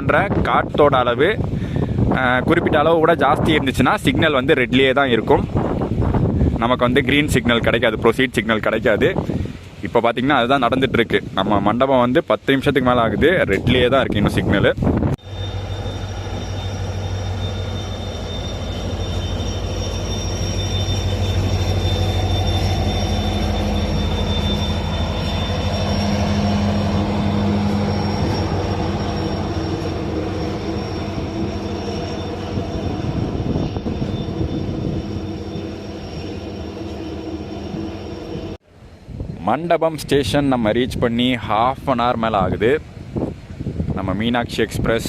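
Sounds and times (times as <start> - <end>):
thin high whine: 0.0 - 39.3
strong wind rushing: 0.0 - 45.0
train humming at a station: 14.4 - 39.4.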